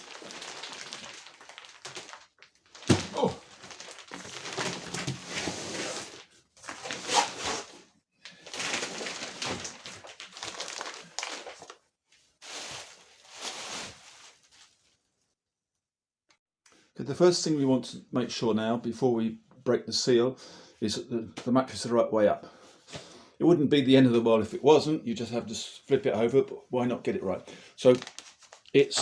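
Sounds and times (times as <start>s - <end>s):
plastic wrapping crinkling: 0.0s - 14.8s, 27.8s - 29.0s.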